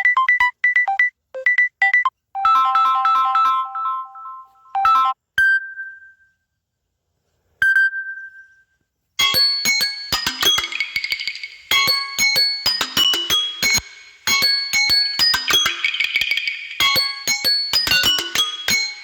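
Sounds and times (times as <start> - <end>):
electronic ringtone melody: 0.0 - 6.0, 9.2 - 19.0
chime-like dings: 9.2 - 19.0.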